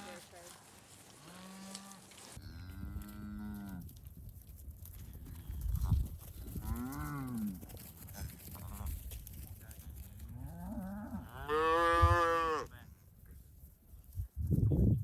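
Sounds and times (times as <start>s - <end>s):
cattle mooing: 1.2s - 3.8s, 10.5s - 12.7s.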